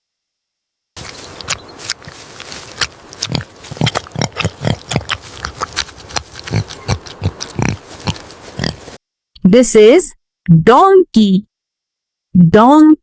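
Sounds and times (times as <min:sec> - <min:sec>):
pig grunting: 0:01.0 - 0:09.0.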